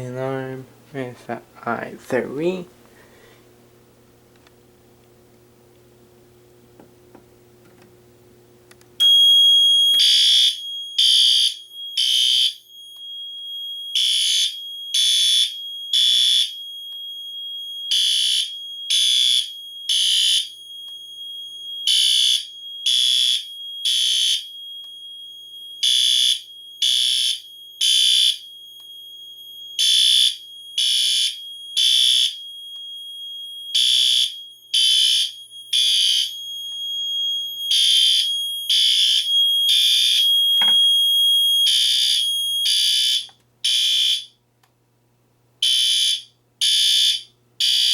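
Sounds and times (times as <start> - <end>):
steady high-pitched tone: 9.0 - 43.2
fire alarm horn blasts: 9.0 - 44.4, 45.6 - 47.9.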